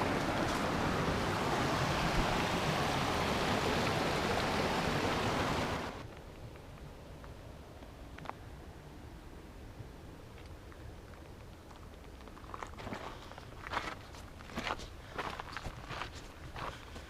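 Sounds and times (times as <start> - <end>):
water rushing in a creek: 0.0 - 6.1.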